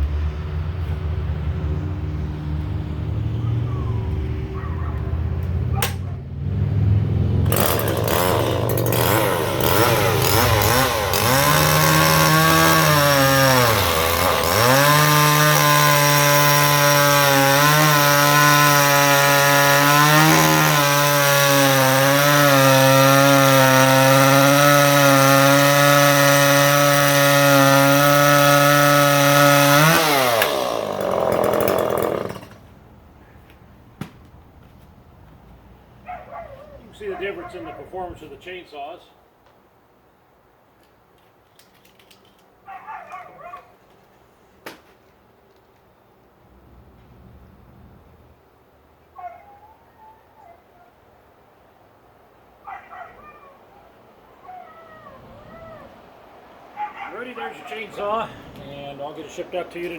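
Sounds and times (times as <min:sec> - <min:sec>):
chainsaw cutting through log: 0:07.0 - 0:32.7.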